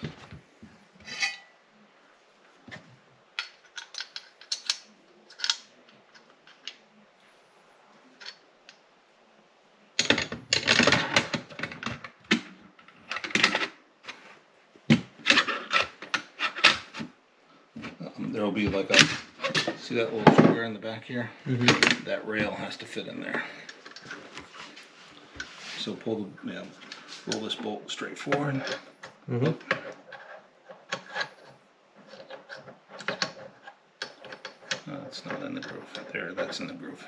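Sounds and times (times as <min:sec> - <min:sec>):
metal rifle parts clattering: 0:01.0 - 0:01.5, 0:03.4 - 0:06.8, 0:10.0 - 0:12.4, 0:13.0 - 0:13.8.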